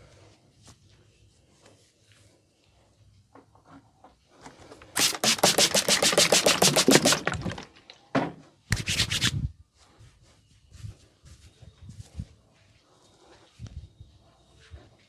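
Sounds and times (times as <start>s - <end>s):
hands slapping skin in massage: 8.7s - 9.4s.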